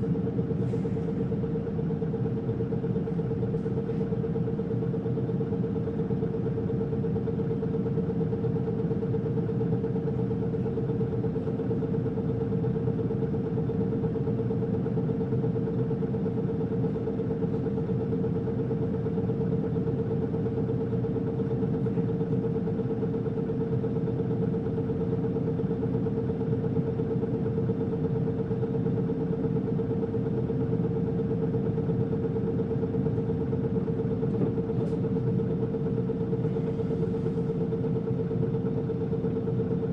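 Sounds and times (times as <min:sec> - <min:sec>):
bus diesel engine idling: 0:00.0 - 0:39.9.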